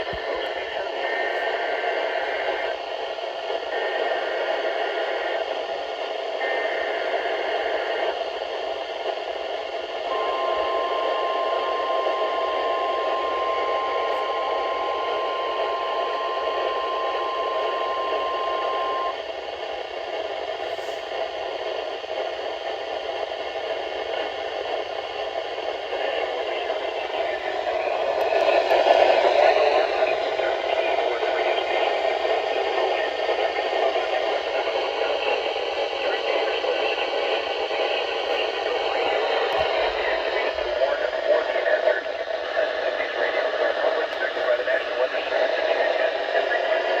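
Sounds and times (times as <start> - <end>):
radio static: 0.0 - 47.0
steady warning alarm tone: 10.1 - 19.2, 22.8 - 36.0.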